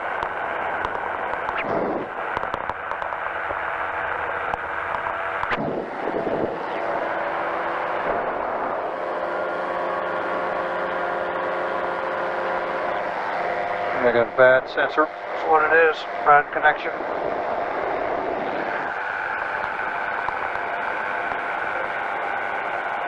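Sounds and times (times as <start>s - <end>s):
aircraft engine and propeller: 0.0s - 23.0s
wind rumbling on microphone: 0.7s - 7.1s, 16.9s - 21.8s.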